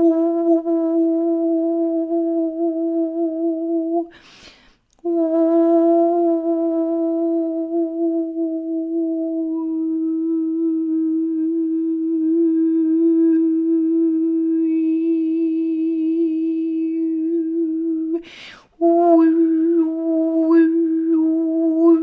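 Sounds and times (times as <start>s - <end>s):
woman humming a sustained note: 0.0s - 4.2s, 5.0s - 22.0s
quick breath: 4.1s - 4.9s, 18.2s - 18.8s.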